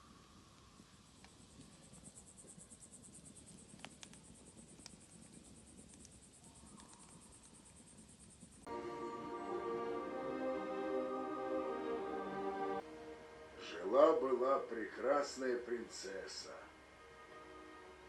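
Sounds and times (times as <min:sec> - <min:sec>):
faint crickets chirping: 0:00.0 - 0:18.0
faint clicks: 0:00.6 - 0:08.6.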